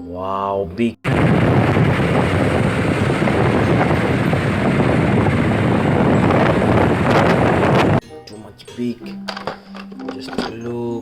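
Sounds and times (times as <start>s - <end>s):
vehicle engine rumble: 1.1s - 8.0s.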